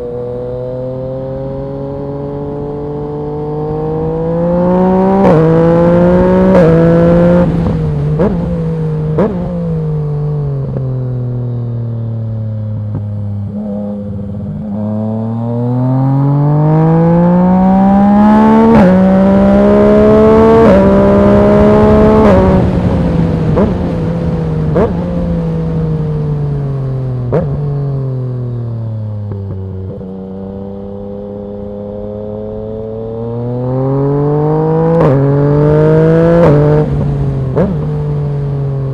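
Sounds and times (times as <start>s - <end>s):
motorcycle engine accelerating: 0.0s - 38.9s
exhaust crack on upshift: 20.3s - 28.1s.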